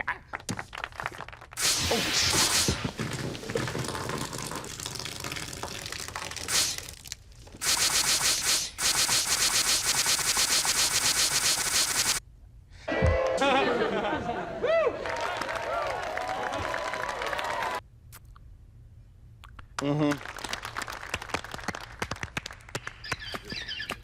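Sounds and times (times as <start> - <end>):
loud fast rattling buzz: 1.6 - 3.3, 6.5 - 6.9, 7.6 - 12.2.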